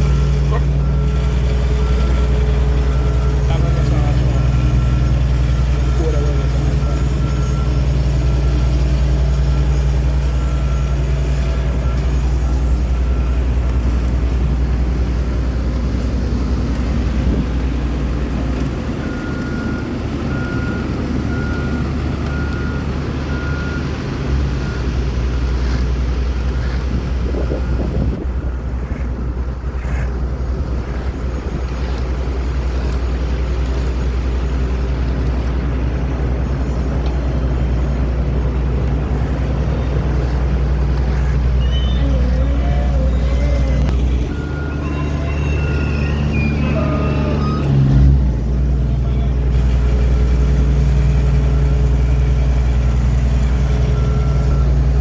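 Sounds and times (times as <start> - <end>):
reversing alarm beeping: 0.0 - 17.7, 18.5 - 25.8, 26.7 - 28.2, 38.5 - 55.0
heavy machinery engines running: 0.0 - 55.0.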